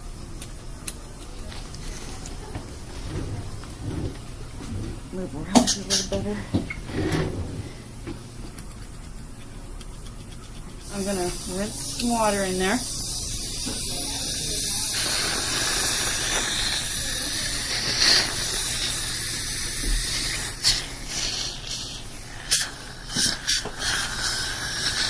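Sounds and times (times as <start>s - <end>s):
dental water spray hissing: 8.7s - 25.0s.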